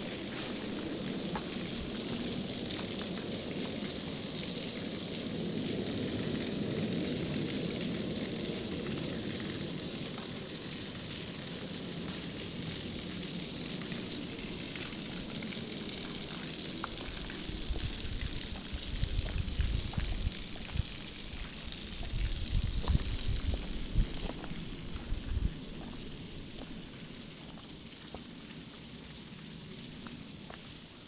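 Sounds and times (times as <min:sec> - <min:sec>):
waterfall rushing and splashing: 0:00.0 - 0:31.0
wind buffeting microphone: 0:16.9 - 0:26.7.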